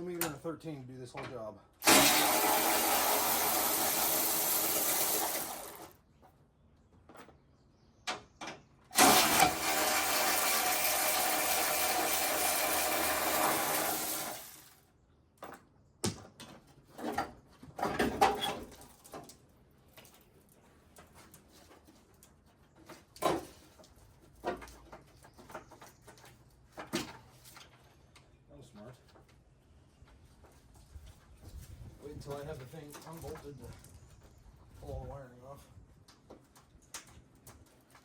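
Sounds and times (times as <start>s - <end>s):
power tool driving out bolt: 1.8s - 5.9s, 8.9s - 14.7s
tools and parts clanking: 16.4s - 27.9s.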